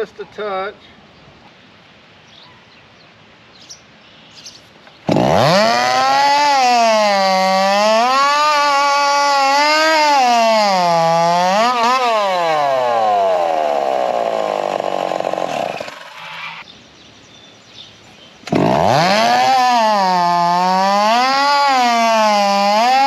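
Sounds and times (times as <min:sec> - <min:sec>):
chainsaw revving: 0:05.1 - 0:16.6, 0:18.4 - 0:23.0.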